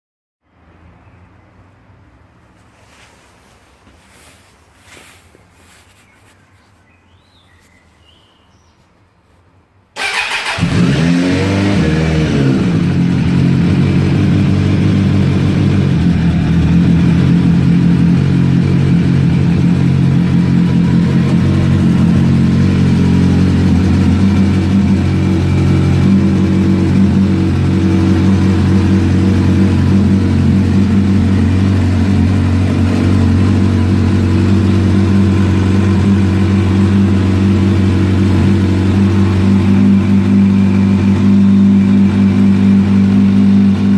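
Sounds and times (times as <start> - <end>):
motorcycle engine revving and idling: 10.0 - 43.9.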